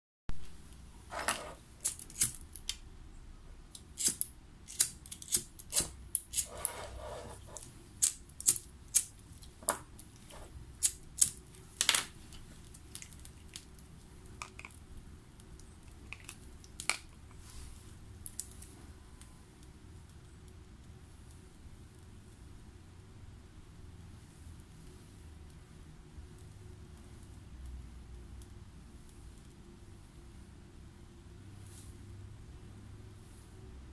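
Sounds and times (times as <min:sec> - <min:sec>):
rasping scrape: 0:05.7 - 0:07.7.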